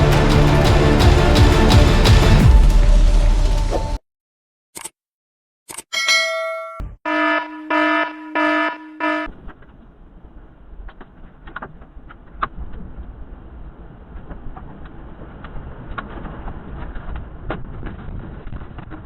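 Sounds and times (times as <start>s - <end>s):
steady rumbling: 0.0s - 4.0s
alarm horn blasts: 7.0s - 9.3s.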